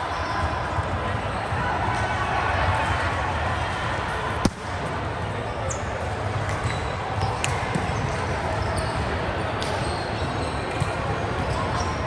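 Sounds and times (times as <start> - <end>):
sports hall background noise: 0.0 - 12.0
volleyball struck hard: 4.1 - 5.1.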